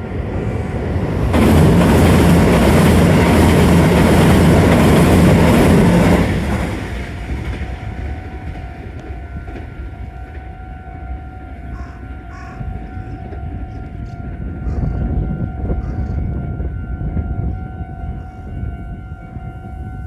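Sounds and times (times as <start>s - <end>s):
train wheels rumbling and clattering: 0.0s - 17.5s.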